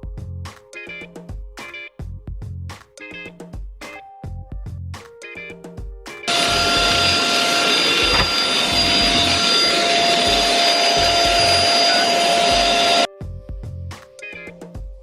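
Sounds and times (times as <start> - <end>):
background music with bass beat: 0.0 - 7.0, 12.5 - 15.0
vacuum cleaner running: 6.3 - 13.1.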